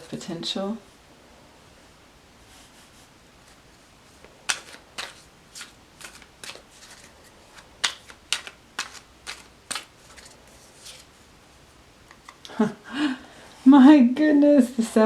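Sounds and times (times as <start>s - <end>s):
cards shuffled by hand: 4.2s - 11.2s.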